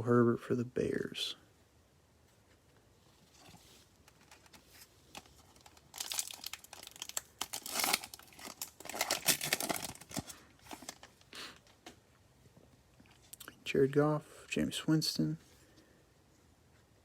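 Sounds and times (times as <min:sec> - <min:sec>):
plastic wrapper tearing and crinkling: 0:04.0 - 0:11.2.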